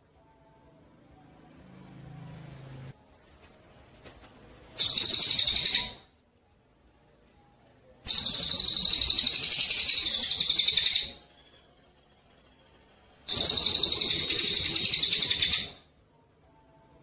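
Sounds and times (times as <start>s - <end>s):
songbird high-pitched trills: 3.0s - 6.1s, 7.2s - 15.9s.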